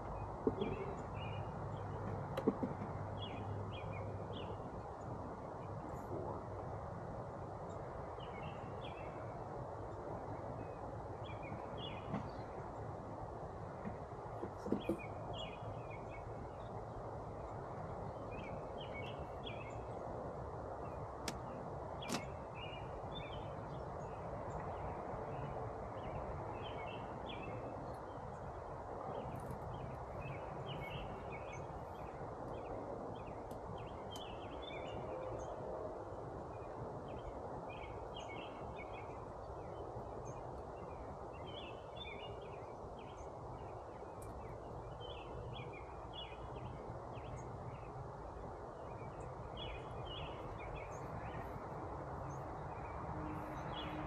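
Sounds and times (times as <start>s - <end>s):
birds chirping: 0.0s - 6.3s, 7.7s - 35.6s, 36.3s - 54.0s.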